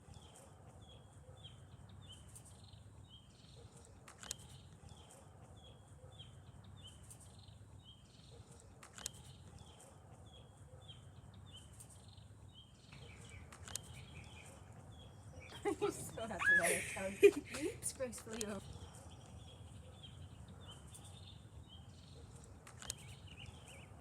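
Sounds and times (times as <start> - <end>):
faint bird song: 0.0 - 24.0
sharp clicks: 3.8 - 4.8, 8.5 - 9.6, 12.9 - 14.4, 18.2 - 18.7, 22.3 - 23.4.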